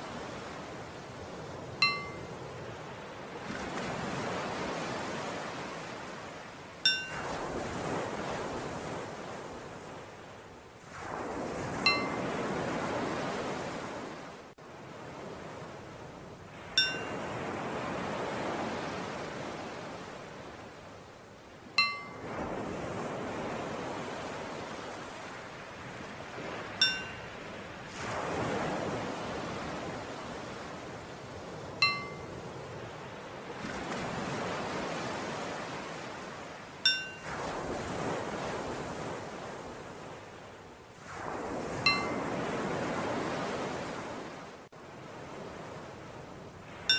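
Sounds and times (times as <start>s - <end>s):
ocean waves washing: 0.0s - 46.9s
small bell ringing: 1.8s - 2.2s, 6.9s - 7.1s, 11.9s - 12.2s, 16.8s - 17.1s, 21.8s - 22.2s, 26.8s - 27.2s, 31.8s - 32.3s, 36.8s - 37.2s.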